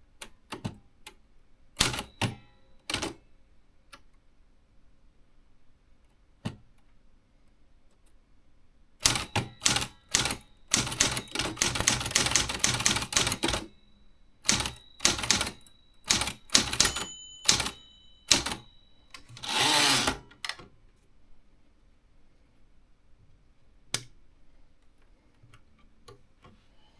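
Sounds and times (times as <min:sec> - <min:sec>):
typewriter key strikes: 0:09.0 - 0:13.7, 0:14.5 - 0:18.6
typewriter carriage return slide: 0:19.2 - 0:20.6.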